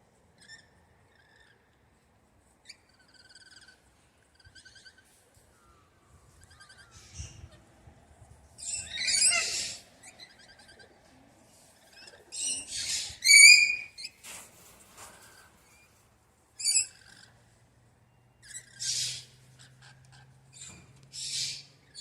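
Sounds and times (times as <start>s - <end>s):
parrots screeching: 6.4s - 7.6s, 8.6s - 11.0s, 11.8s - 14.2s, 16.6s - 17.4s, 18.4s - 22.0s.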